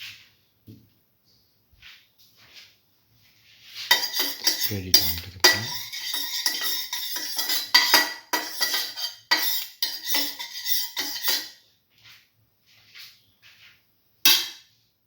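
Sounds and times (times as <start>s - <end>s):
metal utensil scraping frying pan: 3.7s - 11.6s, 14.2s - 14.6s.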